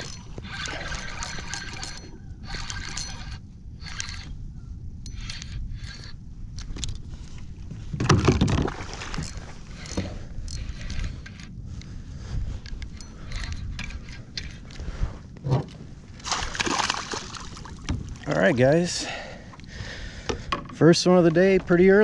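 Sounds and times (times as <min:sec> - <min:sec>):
wind rumble on microphone: 0:00.0 - 0:22.0
water slapping and splashing: 0:16.2 - 0:18.8.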